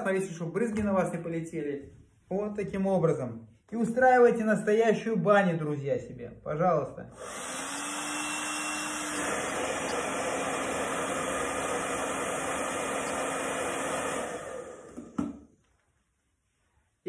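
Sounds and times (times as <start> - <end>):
hair dryer running with whine: 7.2 - 15.4.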